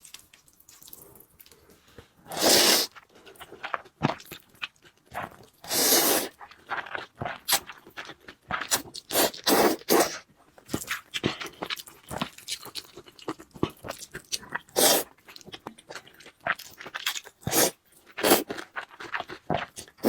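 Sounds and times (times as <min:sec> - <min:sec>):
chewing: 0:00.1 - 0:20.0
noodle slurps: 0:02.3 - 0:03.0, 0:05.2 - 0:07.8, 0:08.6 - 0:10.2, 0:14.7 - 0:15.1, 0:17.4 - 0:18.6.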